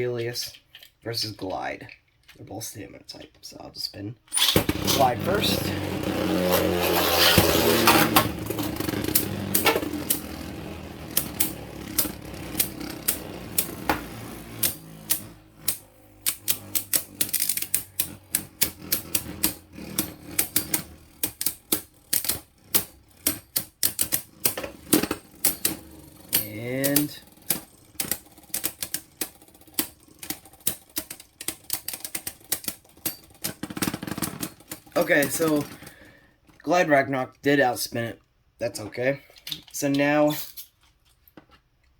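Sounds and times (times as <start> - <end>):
spinning tops clacking: 4.4 - 35.8
spinning tops whirring: 4.4 - 36.0.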